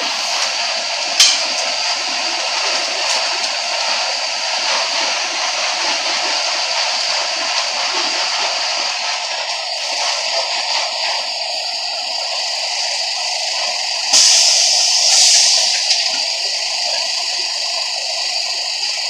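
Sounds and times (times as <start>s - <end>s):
bus engine and road noise: 0.0s - 8.7s.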